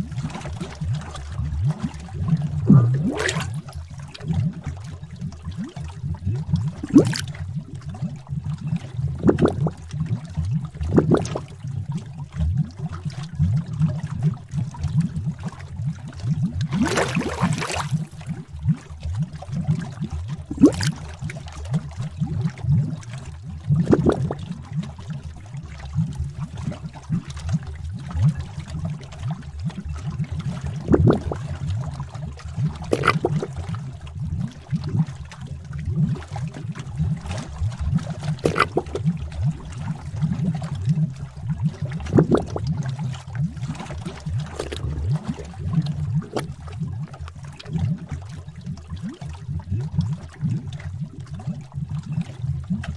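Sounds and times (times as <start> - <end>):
liquid bubbling and gurgling: 0.0 - 52.9
bubble popping: 2.5 - 3.8, 6.8 - 7.3, 9.2 - 9.7, 10.9 - 11.4, 16.6 - 18.2, 20.5 - 21.0, 32.9 - 33.5, 38.4 - 39.1, 42.0 - 42.6, 44.5 - 45.2.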